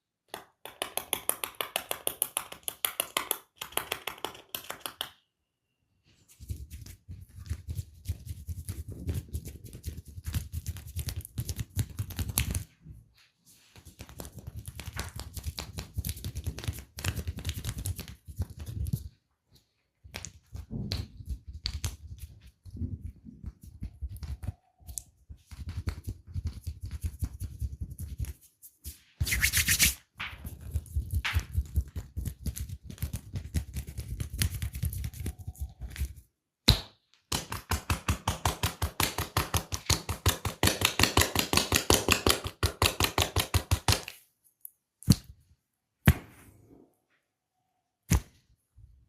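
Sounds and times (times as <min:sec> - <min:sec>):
percussive massage strokes: 0:25.3 - 0:35.5.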